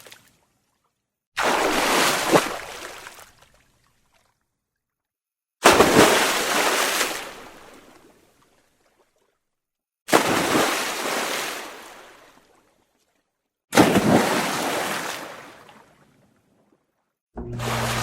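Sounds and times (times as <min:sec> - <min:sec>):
water sound effects: 0:01.4 - 0:03.5, 0:17.4 - 0:18.0.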